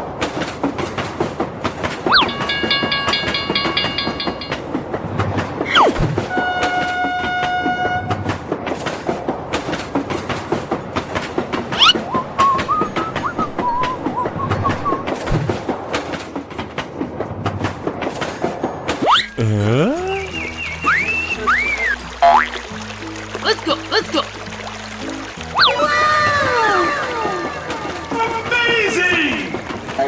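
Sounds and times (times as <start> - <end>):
train wheels clickety-clack: 0.0 - 7.5, 8.2 - 18.9
sliding whistle swoops: 2.1 - 2.4, 5.7 - 8.3, 11.8 - 15.2, 20.2 - 22.0, 25.6 - 26.0
train horn blasts: 6.3 - 8.6.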